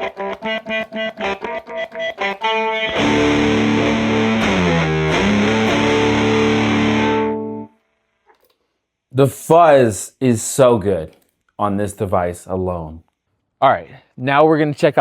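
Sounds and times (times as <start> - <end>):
fuzzed electric guitar: 0.0 - 7.7.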